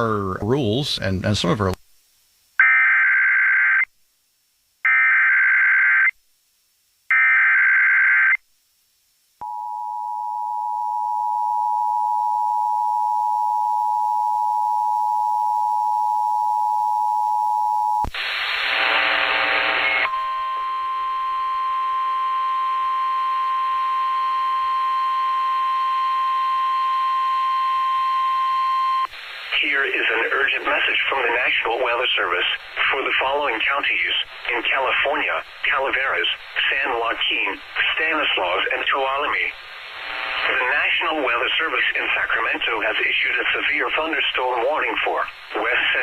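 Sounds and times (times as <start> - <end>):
buzzy hum: 11.6 - 29.6
noisy crackle: 18.0 - 21.8, 29.1 - 46.0.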